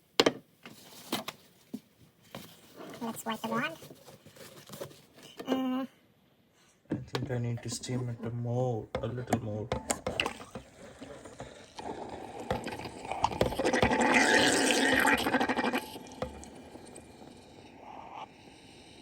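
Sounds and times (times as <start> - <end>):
steam wand steaming milk: 10.1 - 19.0.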